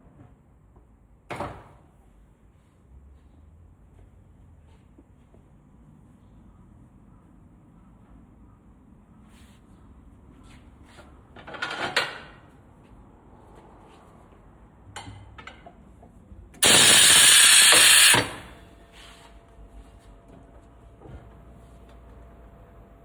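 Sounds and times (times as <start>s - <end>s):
power tool running: 16.6s - 18.7s.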